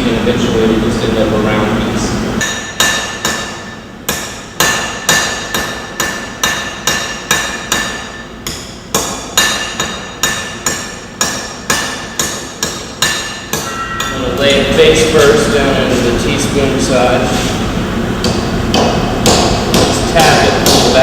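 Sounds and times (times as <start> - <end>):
hammer ringing on anvil: 2.4 - 17.1.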